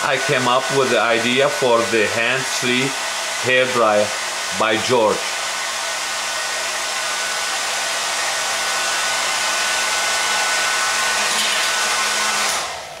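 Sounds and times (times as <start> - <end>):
hair dryer running: 0.0 - 13.0.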